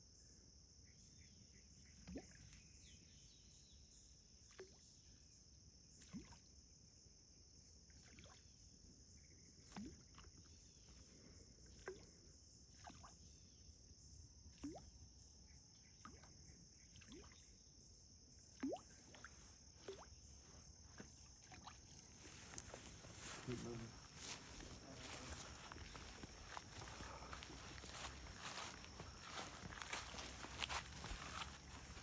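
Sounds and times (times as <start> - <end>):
insect chorus buzzing: 15.0 - 32.0.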